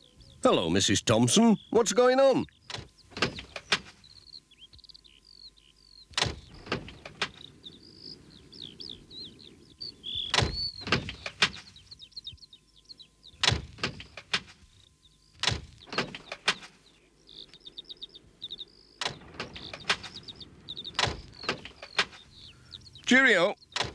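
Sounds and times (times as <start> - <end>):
birds chirping: 0.0 - 23.9
sharp clunks: 2.7 - 4.0, 6.1 - 7.5, 10.2 - 11.9, 13.4 - 14.6, 15.4 - 16.8, 19.0 - 22.6.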